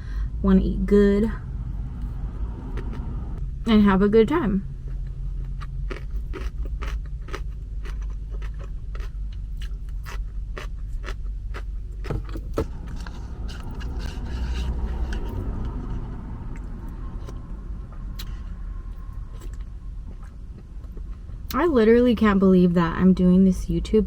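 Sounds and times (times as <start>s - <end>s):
low steady rumble: 0.0s - 24.0s
chewing and biting: 4.8s - 17.4s.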